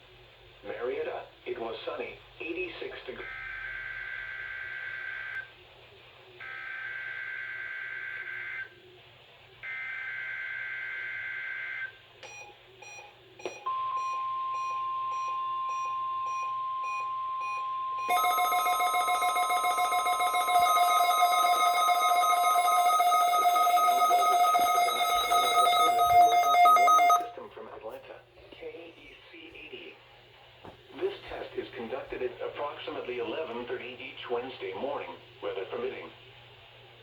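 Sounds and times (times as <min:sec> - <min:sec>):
steady warning alarm tone: 0:13.7 - 0:27.4
fast-pulsing multi-tone alarm: 0:15.8 - 0:27.3
two-tone digital data screech: 0:18.1 - 0:27.3.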